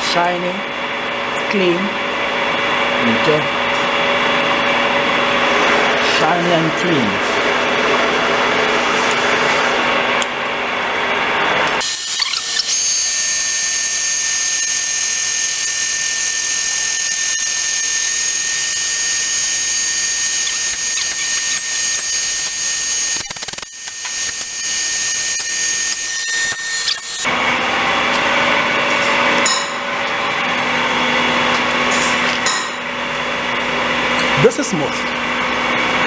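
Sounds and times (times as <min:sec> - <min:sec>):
lathe running: 0:11.8 - 0:27.3
lathe tool squealing: 0:11.8 - 0:27.3.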